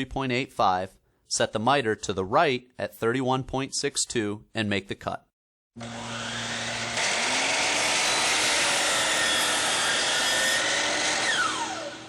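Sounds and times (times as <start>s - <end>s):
miter saw cutting wood: 5.8s - 12.0s
saw blade winding down whine: 5.8s - 12.0s.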